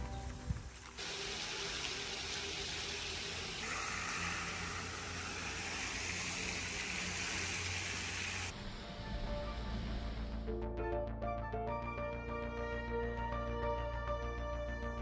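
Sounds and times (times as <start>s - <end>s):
water running: 0.0s - 8.5s.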